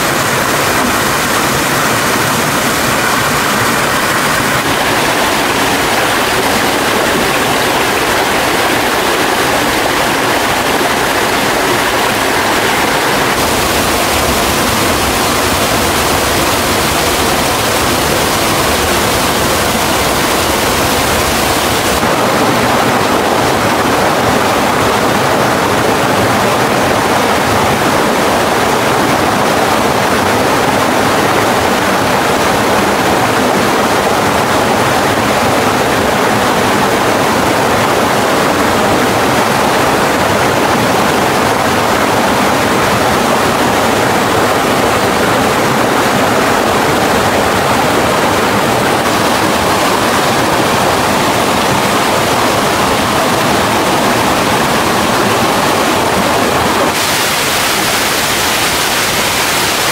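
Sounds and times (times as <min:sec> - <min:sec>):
waterfall roaring: 0:00.0 - 0:59.9.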